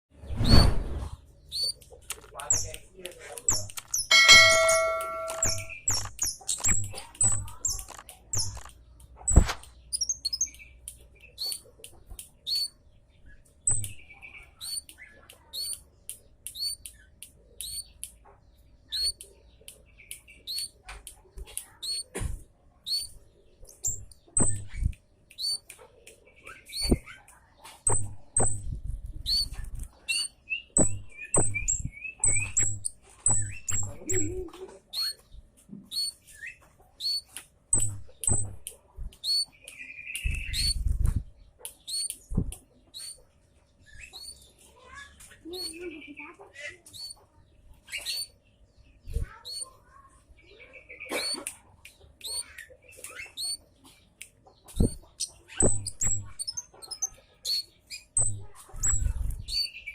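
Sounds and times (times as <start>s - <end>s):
sharp knocks: 3.5s - 8.7s, 27.9s - 28.8s, 30.8s - 34.3s, 37.8s - 38.6s.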